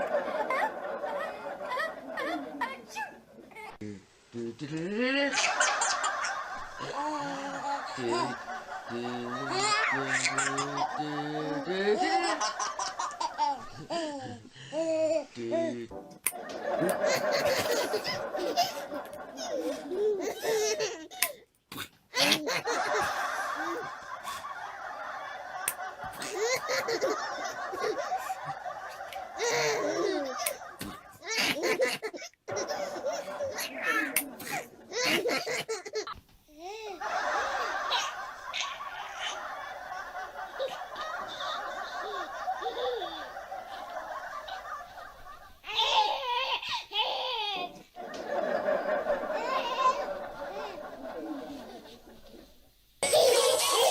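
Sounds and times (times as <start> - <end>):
baby laughing: 5.3 - 15.7, 16.3 - 21.4, 22.1 - 24.4, 25.6 - 39.6, 40.5 - 44.6, 45.6 - 47.9, 48.7 - 52.2, 53.0 - 53.9.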